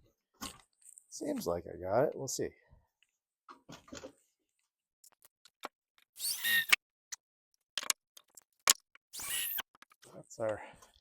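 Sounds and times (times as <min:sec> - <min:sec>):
squeaking scrape: 0:06.2 - 0:06.8, 0:09.1 - 0:09.8.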